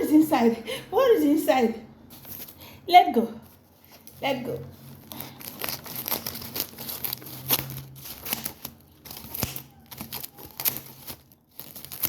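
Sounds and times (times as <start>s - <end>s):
wrapping being torn and crinkled: 3.5s - 12.0s.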